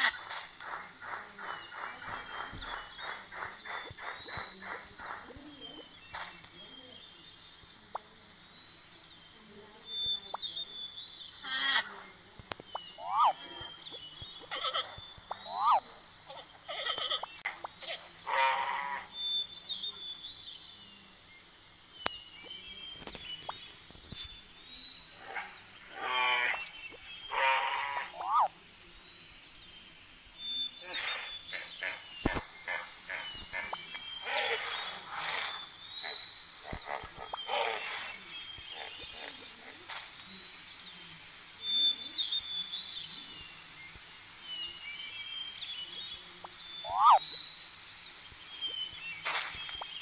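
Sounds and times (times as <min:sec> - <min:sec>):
high-pitched insect or bird background: 0:12.7 - 0:37.6
high bird-like chirps and whistles: 0:12.8 - 0:15.9, 0:45.8 - 0:47.4
animal calls rising and falling: 0:13.0 - 0:13.7, 0:14.5 - 0:15.9, 0:27.3 - 0:28.5, 0:46.8 - 0:47.2
wild animal calls: 0:13.0 - 0:13.7, 0:18.2 - 0:19.1, 0:25.2 - 0:26.7, 0:27.3 - 0:28.5, 0:46.8 - 0:47.2.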